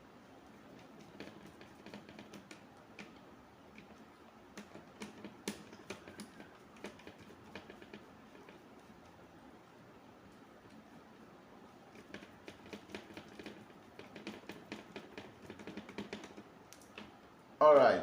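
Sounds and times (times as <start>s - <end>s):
screwdriver clicks and taps: 4.5s - 8.0s.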